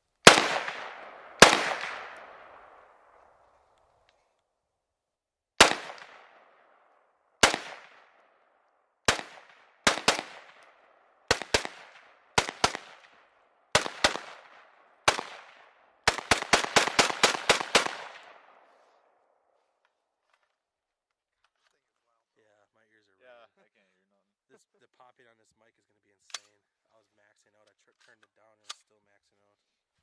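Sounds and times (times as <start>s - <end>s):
rifle shots echoing: 0.2s - 3.7s, 5.6s - 18.8s.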